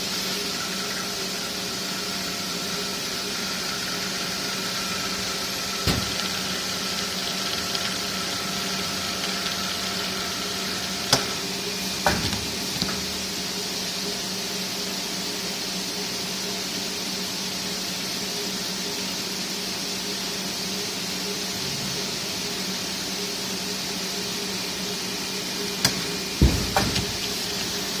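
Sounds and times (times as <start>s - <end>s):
machine hum with hiss: 0.0s - 28.0s
sharp knocks: 25.9s - 27.2s.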